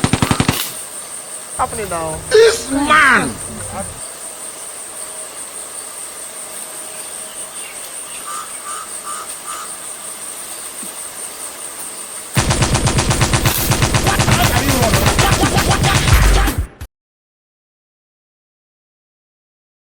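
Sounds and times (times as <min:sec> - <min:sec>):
insects chirring: 0:00.0 - 0:15.2
faint frog croaks: 0:01.6 - 0:04.0, 0:08.2 - 0:09.8
rapid rattle of sharp bangs: 0:12.4 - 0:16.6.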